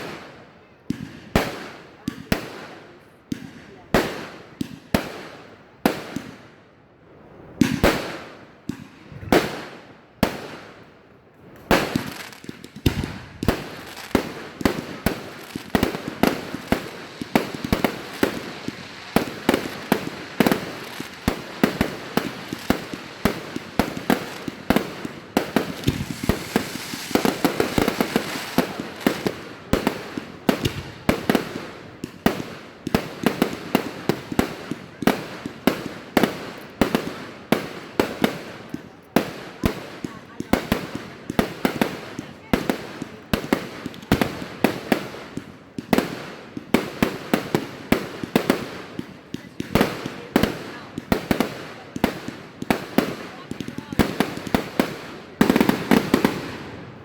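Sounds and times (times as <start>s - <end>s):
fireworks bangs and crackling: 0.0s - 57.0s.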